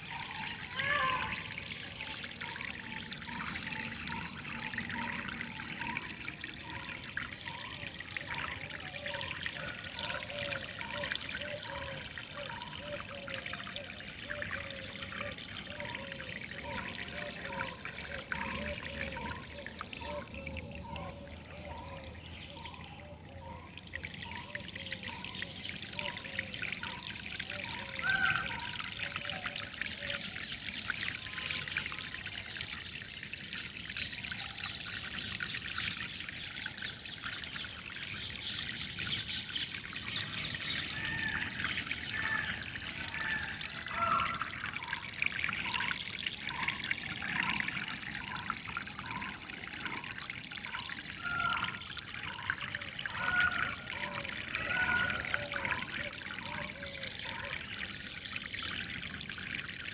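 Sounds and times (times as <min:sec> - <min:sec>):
water trickling: 0:00.0 - 0:59.9
birds calling: 0:38.1 - 0:49.4.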